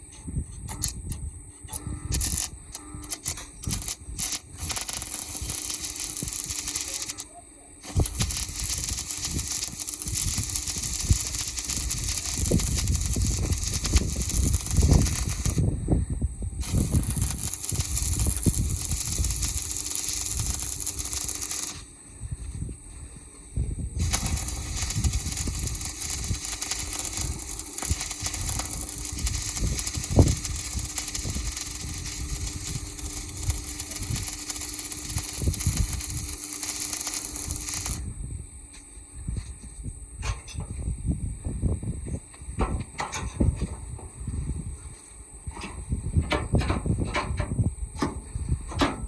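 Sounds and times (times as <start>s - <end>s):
welding arc crackling: 0.7s - 15.7s, 16.6s - 21.9s, 24.0s - 38.1s.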